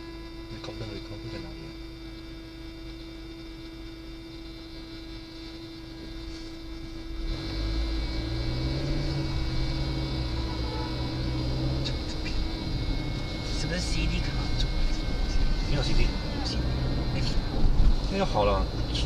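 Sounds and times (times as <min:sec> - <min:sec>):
steady cabin hum: 0:00.0 - 0:19.0
deeper louder hum: 0:05.2 - 0:19.0.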